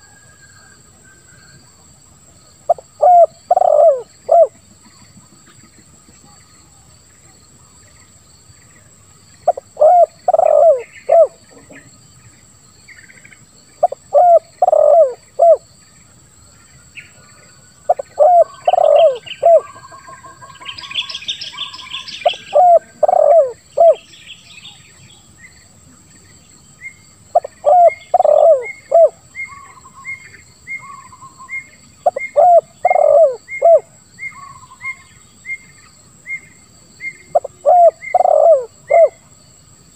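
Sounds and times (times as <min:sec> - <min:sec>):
small birds chirping: 0:02.6 - 0:39.2
dove cooing: 0:02.7 - 0:04.6, 0:09.5 - 0:11.9, 0:13.8 - 0:15.6, 0:17.9 - 0:24.0, 0:27.3 - 0:30.2, 0:32.0 - 0:35.0, 0:37.0 - 0:39.2.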